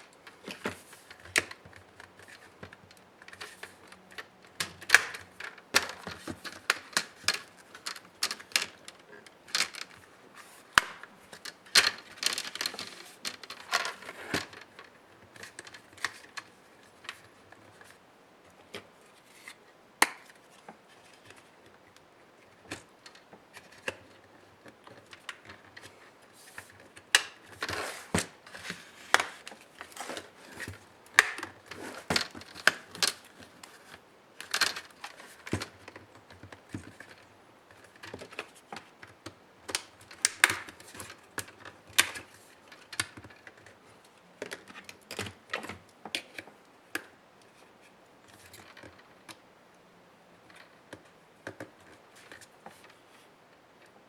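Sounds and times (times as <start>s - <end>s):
clicks and taps of laptop parts: 20.0s - 21.4s, 50.5s - 53.0s.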